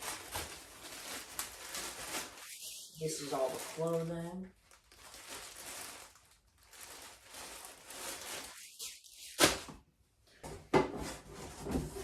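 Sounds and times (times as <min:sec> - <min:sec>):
clothing rustling: 0:00.0 - 0:04.1.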